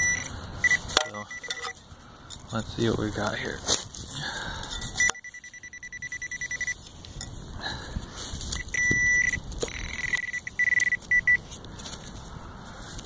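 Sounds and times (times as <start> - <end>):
metal detector beeping: 0.0 - 1.8, 4.8 - 7.4, 8.5 - 11.6.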